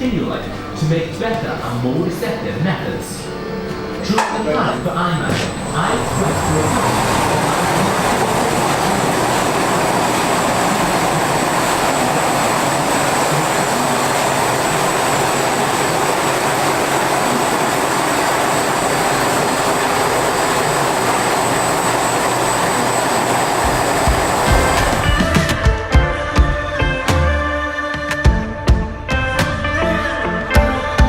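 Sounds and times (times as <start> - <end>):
high constant whine: 0.0 - 25.6
rushing machinery noise: 3.2 - 25.8.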